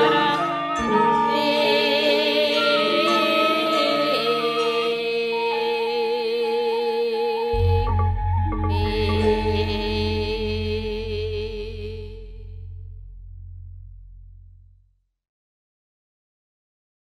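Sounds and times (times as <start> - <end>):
singing with wavering held notes: 0.0 - 12.9
sustained instrumental tones: 7.5 - 14.8.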